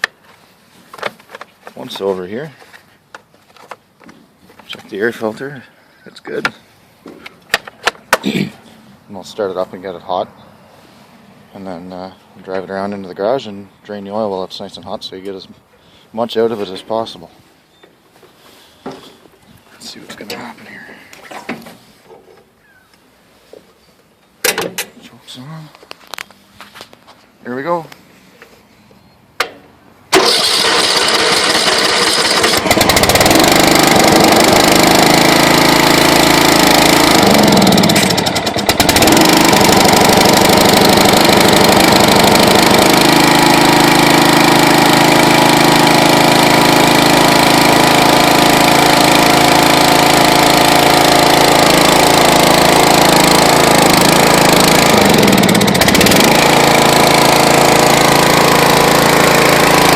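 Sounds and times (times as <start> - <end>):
electric starter cranking: 30.1 - 59.9
small engine running: 30.1 - 59.9.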